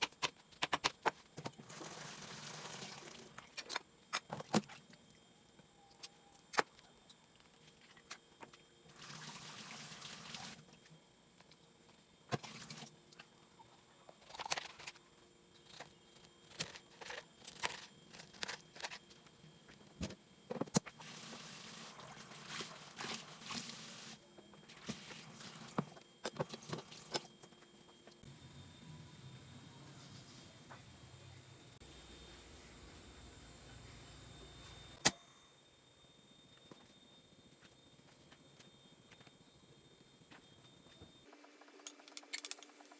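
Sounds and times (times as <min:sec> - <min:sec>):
utensils clicking and knocking: 0:41.4 - 0:42.9.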